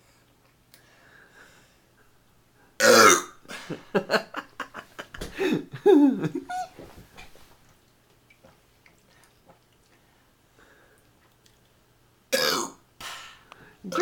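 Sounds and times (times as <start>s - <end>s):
man belching: 2.8s - 3.4s, 12.4s - 12.8s.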